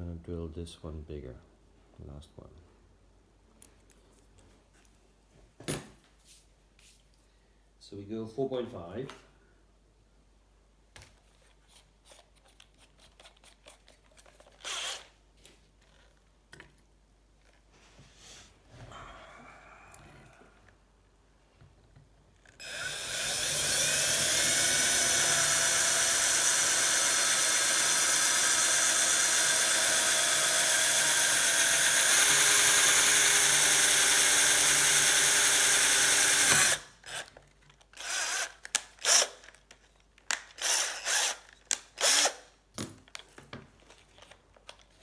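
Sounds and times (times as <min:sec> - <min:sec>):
electric drill drilling metal: 0:22.6 - 0:37.2, 0:38.0 - 0:39.4, 0:40.6 - 0:41.4, 0:42.0 - 0:42.4.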